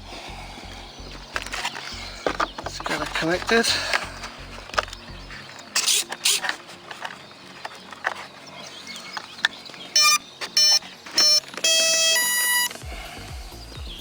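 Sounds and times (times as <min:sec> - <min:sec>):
speed controller beeps: 0:08.9 - 0:12.8.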